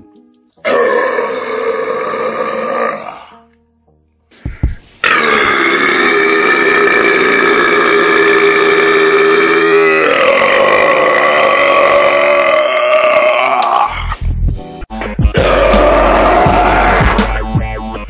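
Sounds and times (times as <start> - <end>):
man burping loudly: 0.6 - 3.4, 5.0 - 14.2, 15.2 - 17.4.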